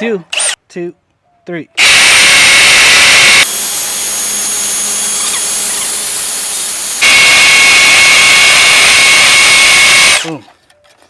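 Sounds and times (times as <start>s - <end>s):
hammer drill boring into concrete: 0.4s - 0.6s, 1.8s - 10.3s.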